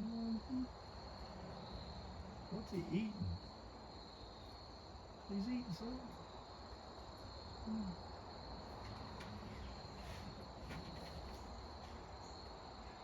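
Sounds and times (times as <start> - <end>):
crickets trilling: 0.0 - 13.0.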